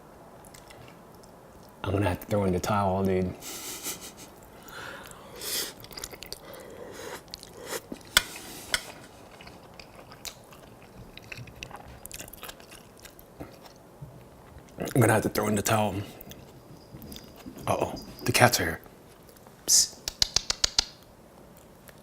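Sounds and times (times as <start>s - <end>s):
close-up chewing with wet mouth noises: 0.4s - 1.8s, 4.5s - 8.2s, 8.9s - 15.0s.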